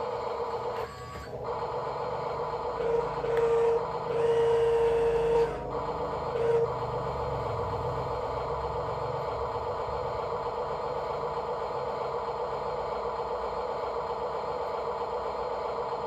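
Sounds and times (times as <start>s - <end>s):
small electric motor whining: 0.0s - 6.9s.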